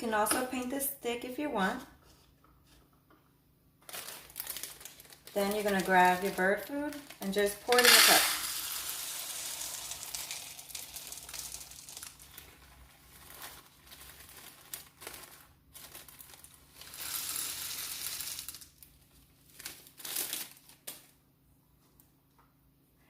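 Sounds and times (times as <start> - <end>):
rustling handling noises: 1.7 - 7.3, 11.8 - 17.0
bird seed pouring into cup: 7.7 - 13.4, 16.8 - 18.7.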